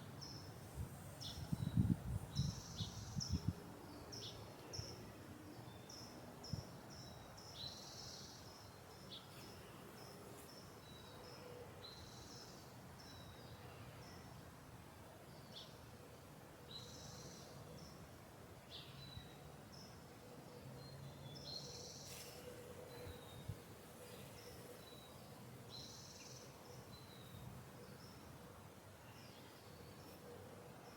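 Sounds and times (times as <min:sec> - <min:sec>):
small songbirds chirping: 0:00.0 - 0:15.9, 0:16.6 - 0:30.9.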